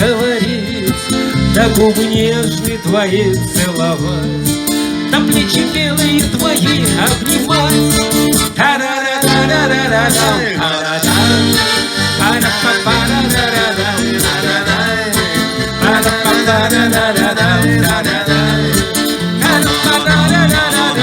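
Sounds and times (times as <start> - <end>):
acoustic band playing: 0.0 - 21.0
repeating bass line: 0.3 - 8.6, 9.2 - 21.0
wavering melody line: 9.2 - 21.0.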